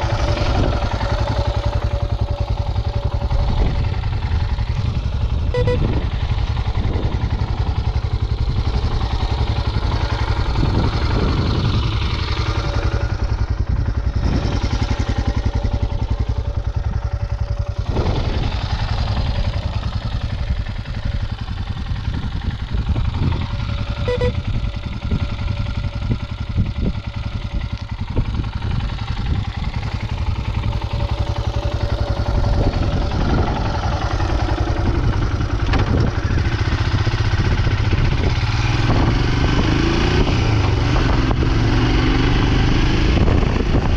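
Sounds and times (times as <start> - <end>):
motorcycle engine running: 0.0 - 43.9.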